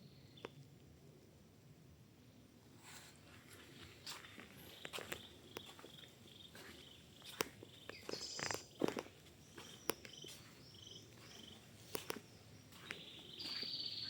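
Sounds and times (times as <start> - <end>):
footsteps on forest floor: 2.8 - 14.0
faint high chirping: 4.2 - 14.0.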